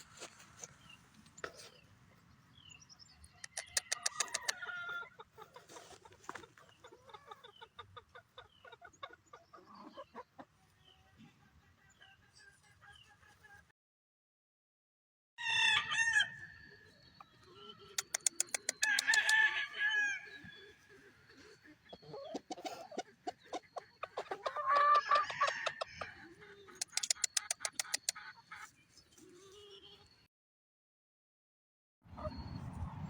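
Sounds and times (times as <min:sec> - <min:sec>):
roosters crowing and clucking: 0:03.3 - 0:13.7, 0:15.4 - 0:29.5
sharp rapid clicks: 0:18.0 - 0:19.3, 0:26.8 - 0:28.1.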